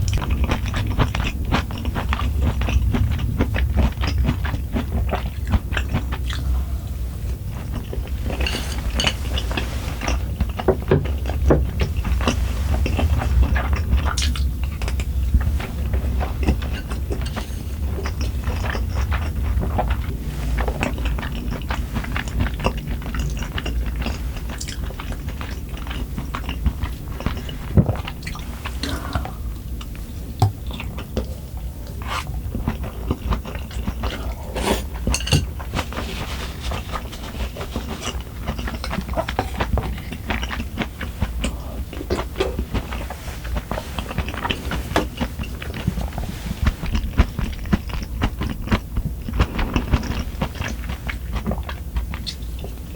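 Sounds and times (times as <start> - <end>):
person chewing food: 0.0 - 52.9
cutlery clinking on dishes: 35.1 - 35.5.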